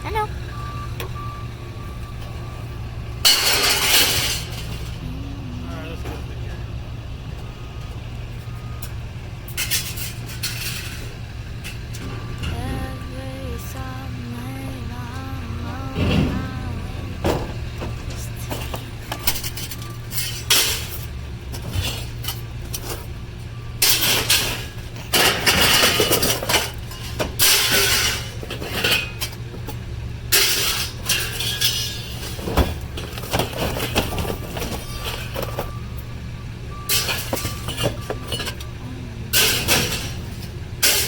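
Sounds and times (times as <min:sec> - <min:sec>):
steady low hum: 0:00.0 - 0:08.1, 0:10.8 - 0:22.4, 0:36.0 - 0:41.0
scrap metal clanking: 0:03.2 - 0:05.3, 0:09.5 - 0:13.8, 0:15.0 - 0:23.1, 0:23.8 - 0:35.8, 0:36.7 - 0:41.0.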